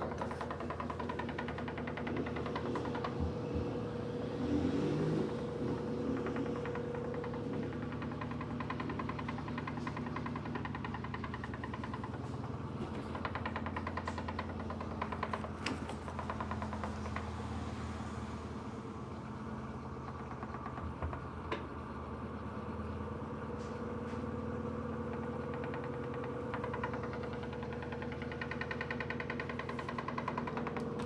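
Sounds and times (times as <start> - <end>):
washing machine spinning: 5.3 - 17.6, 24.5 - 31.0.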